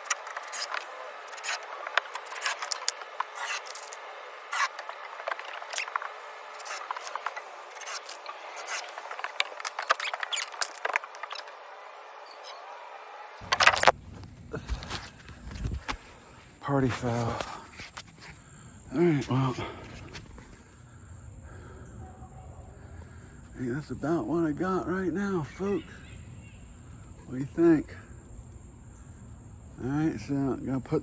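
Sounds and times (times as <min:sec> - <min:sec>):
scraping on wood: 0:00.0 - 0:11.6.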